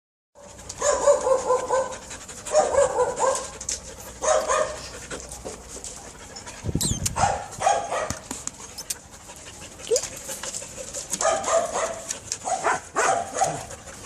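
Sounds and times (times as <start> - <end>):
dog barking: 0.8 - 1.9, 2.5 - 3.5, 4.2 - 4.8, 7.1 - 8.2, 11.2 - 13.7.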